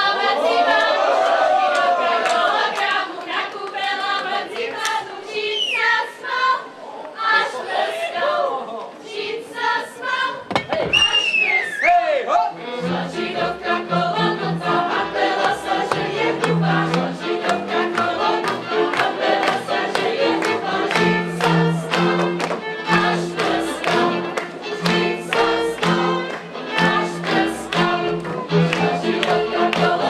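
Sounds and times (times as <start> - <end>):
group of voices singing: 0.0 - 10.9, 12.5 - 30.0
quick rhythmic strokes: 12.7 - 30.0.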